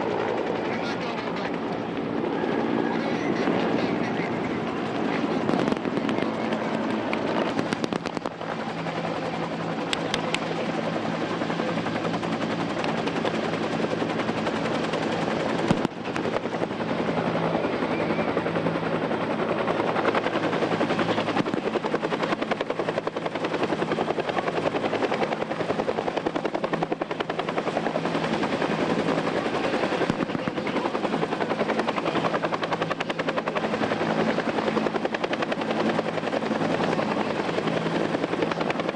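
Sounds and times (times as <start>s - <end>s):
helicopter rotor drone: 0.0s - 38.9s.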